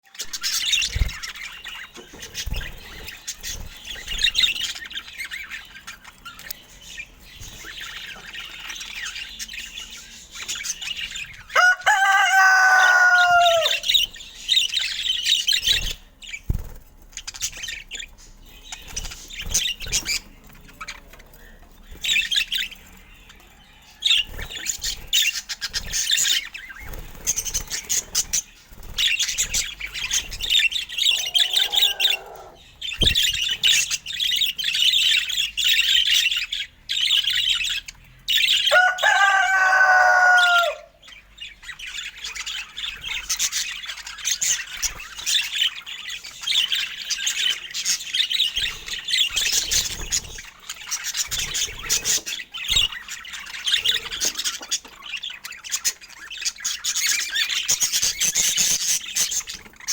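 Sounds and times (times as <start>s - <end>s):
budgerigars chirping and chattering: 0.0s - 59.9s
bird giving a lower call: 31.1s - 32.6s.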